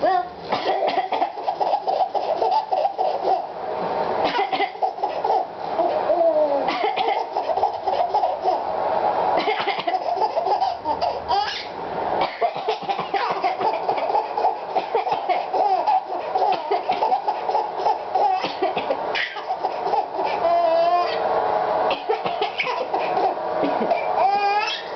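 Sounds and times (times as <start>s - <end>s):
baby laughing and squealing: 0.0s - 3.5s, 4.3s - 8.7s, 9.5s - 11.8s, 12.4s - 21.2s, 22.1s - 24.9s
adult coughing: 0.5s - 1.4s, 4.2s - 5.0s, 6.7s - 7.4s, 9.4s - 10.6s, 12.2s - 14.1s, 18.3s - 19.3s, 21.9s - 24.1s.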